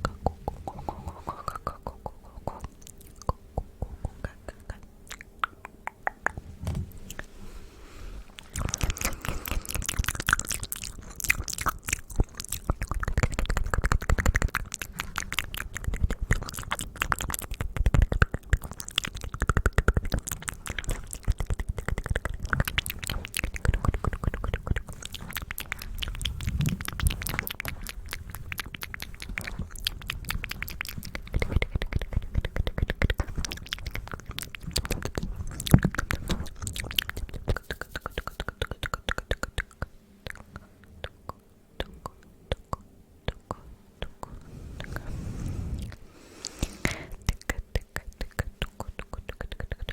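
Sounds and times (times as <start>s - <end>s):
wet mouth clicks and smacks: 0.0s - 6.4s, 8.4s - 45.0s, 45.7s - 49.9s.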